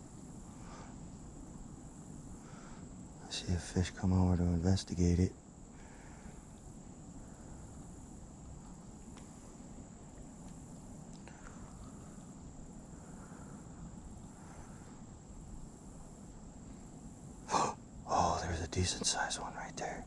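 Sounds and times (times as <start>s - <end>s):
insects trilling: 0.0s - 20.0s
low outdoor rumble: 0.0s - 20.0s
faint clicks: 7.7s - 9.4s, 10.0s - 12.5s.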